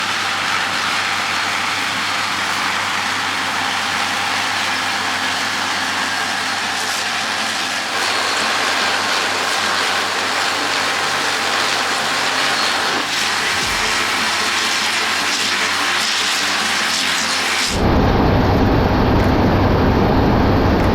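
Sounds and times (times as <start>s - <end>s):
combine harvester running: 0.0s - 20.9s
low engine hum: 17.8s - 20.9s.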